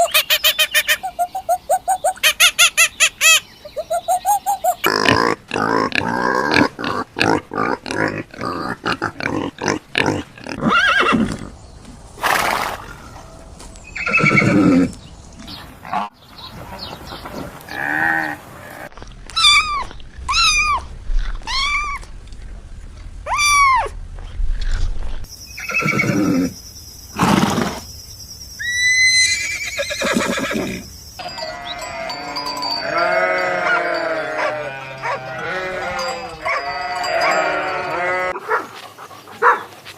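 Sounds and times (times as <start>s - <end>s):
farm animal calls: 0.0s - 11.5s, 28.6s - 38.6s.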